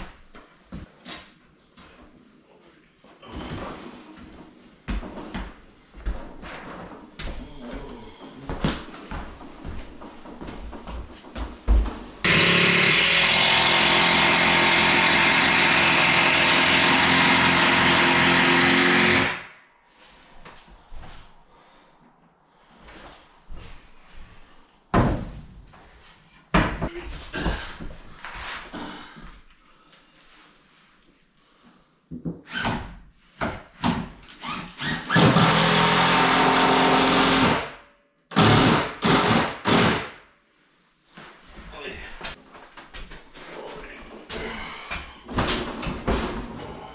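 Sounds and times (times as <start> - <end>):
power tool motor running: 12.2 - 19.5, 35.2 - 37.6, 38.3 - 40.0.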